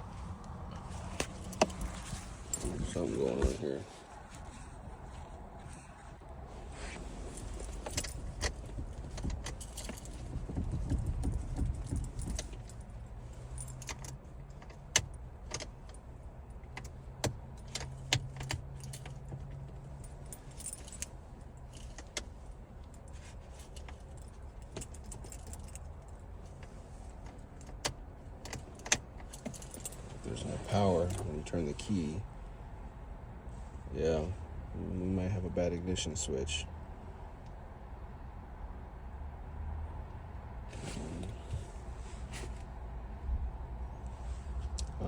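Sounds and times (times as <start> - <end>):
keyring jangling: 7.4 - 15.6, 17.6 - 22.2, 23.1 - 30.1
key clicking in ignition: 7.7 - 12.8, 13.5 - 16.0, 16.6 - 19.4, 23.6 - 30.0.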